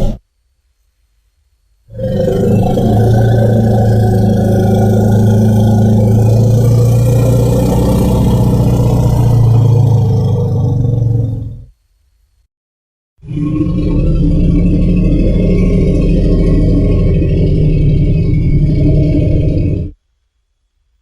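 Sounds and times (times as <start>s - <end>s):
low buzzing creature drone: 1.9s - 11.7s, 13.2s - 20.0s.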